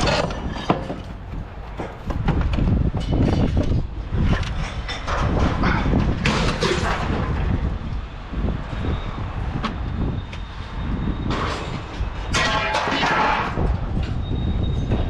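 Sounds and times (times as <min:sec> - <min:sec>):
metallic clanks and rattles: 0:00.0 - 0:07.6, 0:11.2 - 0:15.0.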